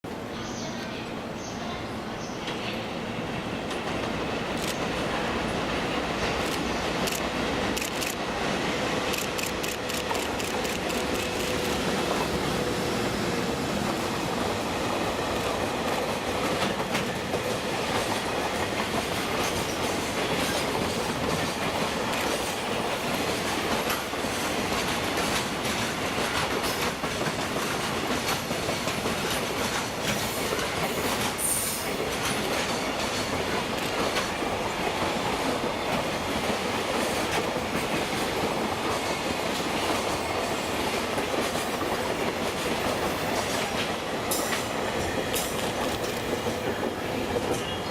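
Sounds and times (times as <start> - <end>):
freight train rumbling past: 0.0 - 47.9.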